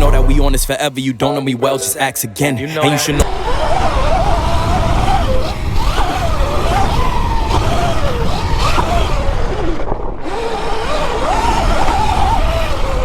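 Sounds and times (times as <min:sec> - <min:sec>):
electric dirt bike motor whining: 0:03.1 - 0:13.0
wind rumble on microphone: 0:03.2 - 0:13.0.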